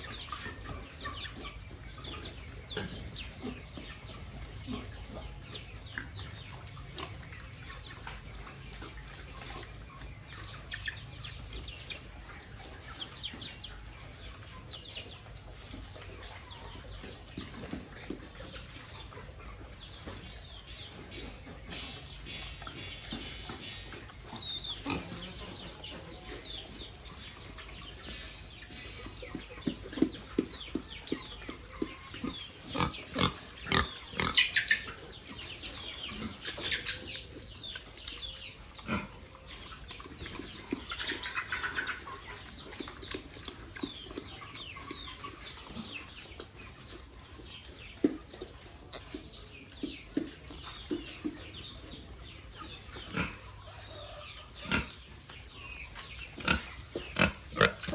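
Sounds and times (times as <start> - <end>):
pigs feeding: 0.0 - 57.9
high-pitched pig calls: 15.9 - 47.5, 52.5 - 57.9.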